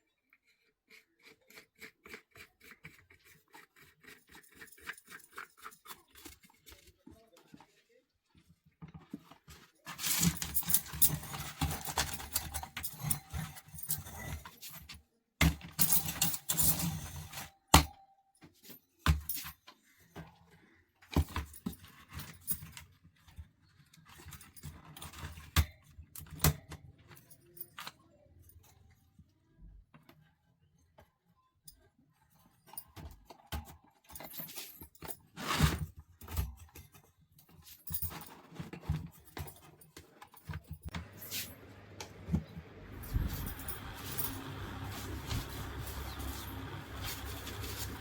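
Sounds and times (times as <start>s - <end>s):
small hard objects clattering: 43.0s - 48.0s.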